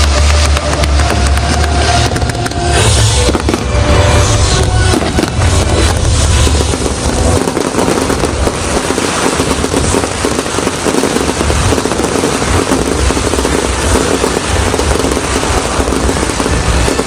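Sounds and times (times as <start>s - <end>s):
deep fireworks booms: 0.0s - 17.0s
fireworks crackling: 0.0s - 17.0s.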